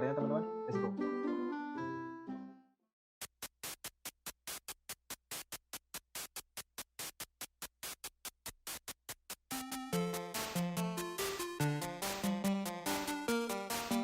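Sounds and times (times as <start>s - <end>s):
plucked string melody: 0.0s - 2.6s
fast percussion beat: 3.2s - 14.0s.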